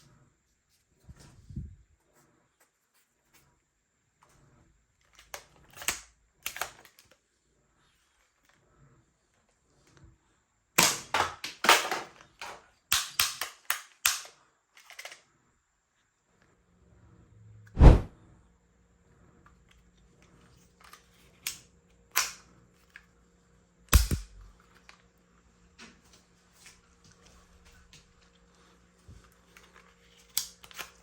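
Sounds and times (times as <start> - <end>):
toy gun clicks and snaps: 5.3 - 7.2, 10.8 - 15.2, 21.4 - 22.5, 23.9 - 24.5.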